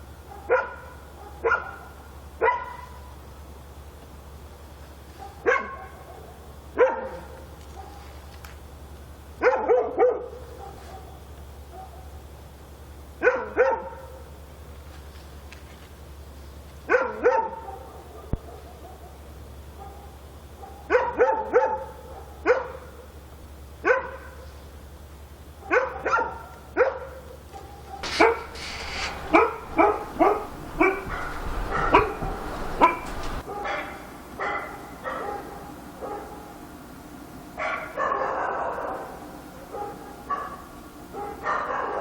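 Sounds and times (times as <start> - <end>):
dog barking: 0.2 - 3.1, 5.1 - 8.2, 9.4 - 12.2, 13.2 - 14.2, 16.9 - 23.0, 23.8 - 24.4, 25.6 - 36.6, 37.6 - 42.0
steady low hum: 28.0 - 33.5.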